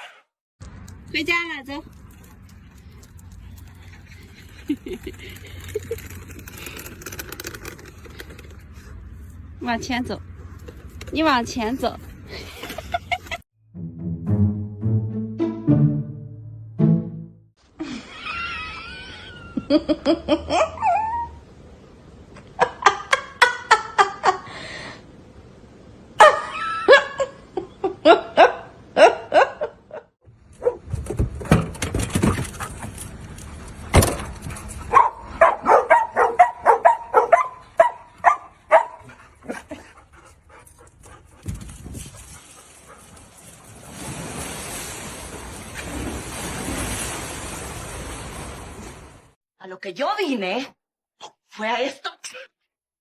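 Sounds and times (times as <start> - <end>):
music: 13.6 - 17.5
dog whining or howling: 20.8 - 21.5
dogs barking: 34.9 - 39.2.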